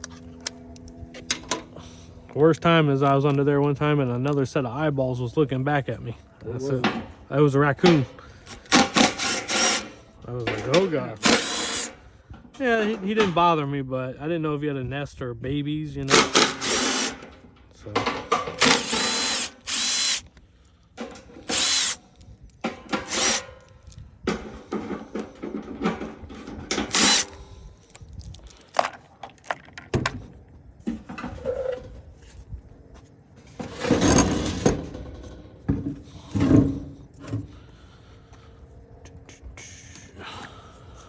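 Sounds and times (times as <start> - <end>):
parts knocking and rattling: 7.8 - 13.4, 16.0 - 20.4, 21.0 - 32.0, 33.5 - 37.7
cordless power drill bursts: 8.5 - 10.0, 11.2 - 12.1, 16.0 - 17.3, 18.4 - 20.3, 21.4 - 22.0, 22.9 - 23.5, 26.7 - 27.4.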